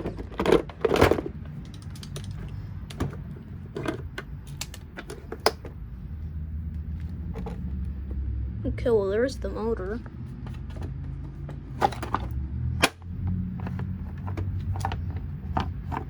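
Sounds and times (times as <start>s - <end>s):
plastic scraping rustles: 0.0s - 5.6s
plastic parts clicking and knocking: 0.0s - 5.8s, 7.3s - 7.8s, 10.4s - 16.0s.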